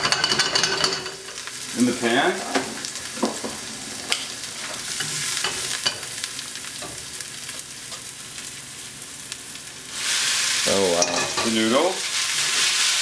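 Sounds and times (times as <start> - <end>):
mushrooms sizzling in a pan: 0.9 - 13.0.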